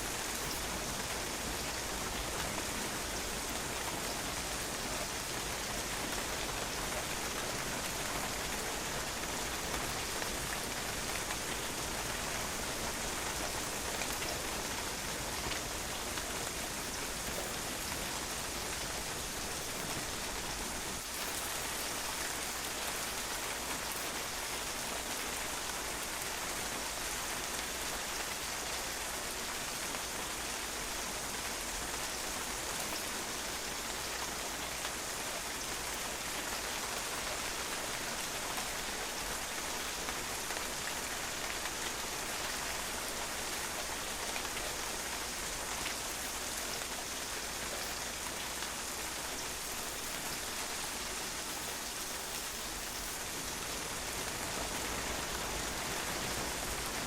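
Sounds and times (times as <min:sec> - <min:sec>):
rain pattering on patio: 0:00.0 - 0:57.0.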